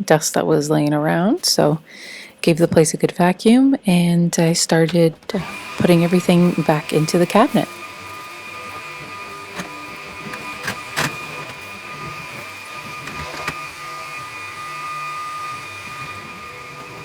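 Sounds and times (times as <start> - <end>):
vacuum cleaner whining: 4.8 - 17.0.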